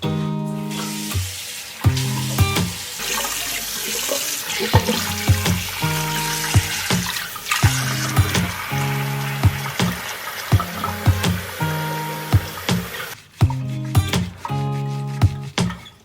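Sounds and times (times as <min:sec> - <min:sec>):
background music: 0:00.0 - 0:16.0
tap running into sink: 0:00.7 - 0:13.2.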